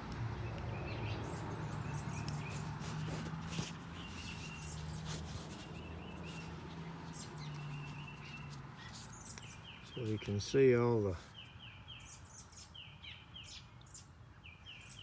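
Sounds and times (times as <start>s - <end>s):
small birds chirping: 0.1s - 15.0s.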